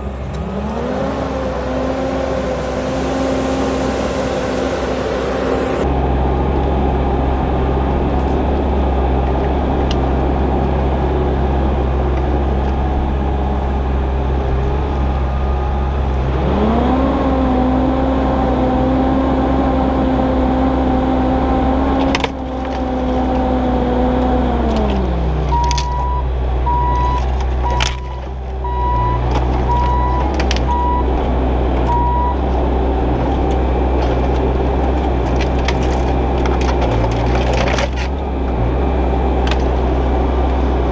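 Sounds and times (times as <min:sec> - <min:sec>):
heavy diesel engine revving: 0:00.0 - 0:40.9
backup alarm beeping: 0:25.5 - 0:31.1, 0:31.9 - 0:32.4.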